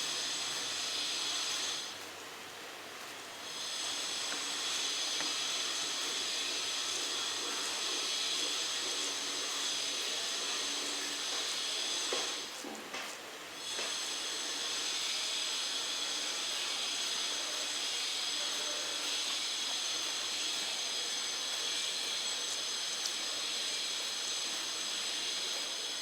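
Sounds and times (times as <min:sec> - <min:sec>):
food deep-frying in oil: 0:13.6 - 0:26.0.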